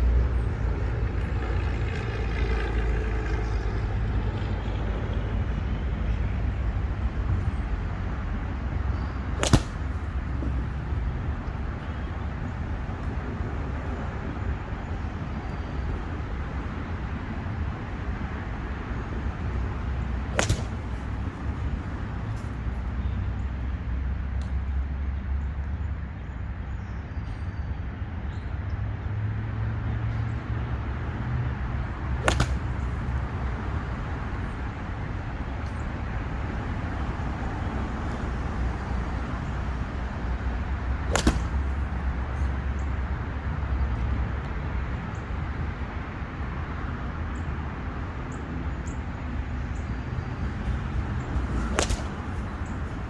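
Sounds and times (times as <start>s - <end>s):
low outdoor rumble: 0.0s - 24.0s, 30.3s - 53.0s
golf club striking ball: 7.4s - 22.6s, 31.9s - 34.9s, 41.0s - 43.1s, 50.2s - 53.0s.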